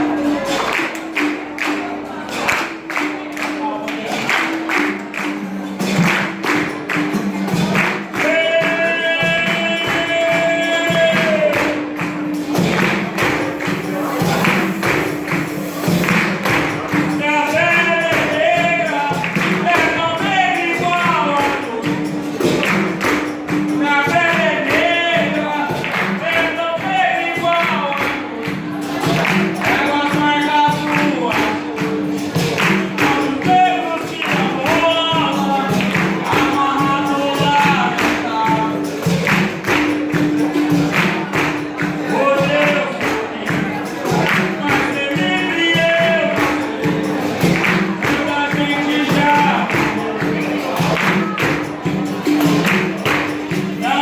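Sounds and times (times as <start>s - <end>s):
pandeiro: 0.0s - 54.0s
person singing: 0.0s - 54.0s.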